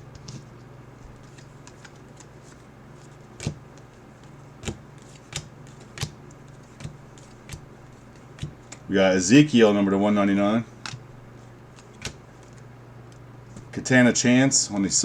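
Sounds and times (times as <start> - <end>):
steady low hum: 0.0 - 15.0
trading cards clicking and tapping: 1.1 - 8.9, 10.8 - 11.1, 11.7 - 13.8.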